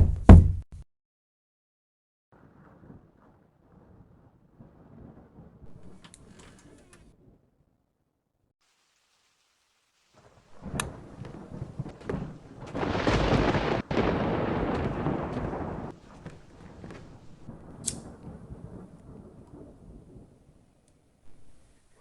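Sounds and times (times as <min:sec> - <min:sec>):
sharp thunder cracks: 0:02.4 - 0:07.5, 0:10.2 - 0:21.6
rolling thunder rumble: 0:02.4 - 0:07.7, 0:10.2 - 0:21.9
rain hiss: 0:08.6 - 0:22.0.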